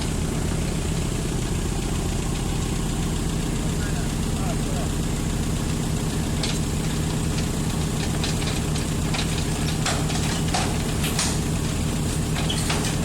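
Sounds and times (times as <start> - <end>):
excavator diesel engine running: 0.0 - 13.0
sharp metallic knocks and clicks: 6.3 - 11.7, 12.3 - 13.0.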